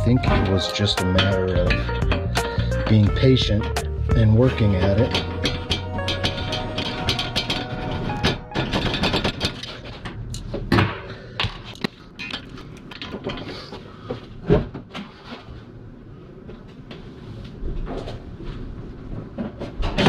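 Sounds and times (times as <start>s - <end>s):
metal clicks and knocks: 4.9s - 10.5s.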